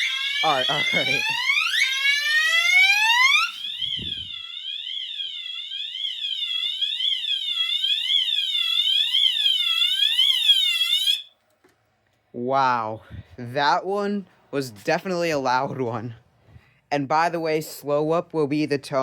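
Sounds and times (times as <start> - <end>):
fire alarm horns wailing: 0.0 - 11.3.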